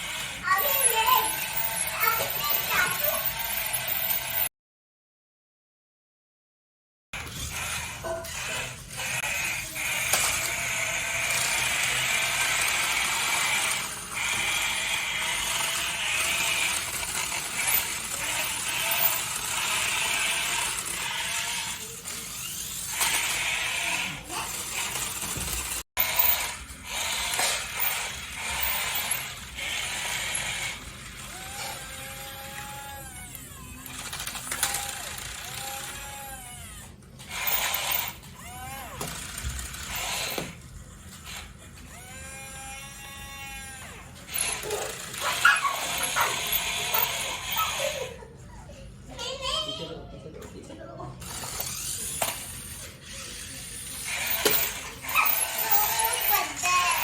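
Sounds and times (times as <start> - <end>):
small electric motors whirring: 0.0 - 4.5, 7.2 - 48.2, 51.2 - 57.0.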